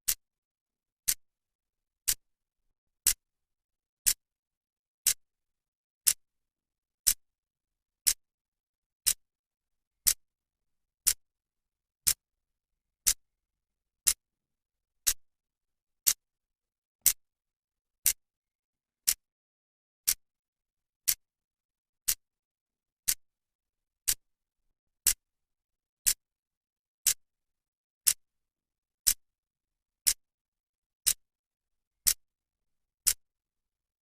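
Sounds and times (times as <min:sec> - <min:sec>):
clock ticking: 0:01.0 - 0:01.2, 0:02.0 - 0:02.2, 0:08.0 - 0:08.2, 0:14.0 - 0:14.2, 0:16.0 - 0:16.2, 0:19.0 - 0:19.3, 0:21.0 - 0:21.2, 0:23.0 - 0:23.2, 0:24.0 - 0:24.2, 0:30.0 - 0:30.2.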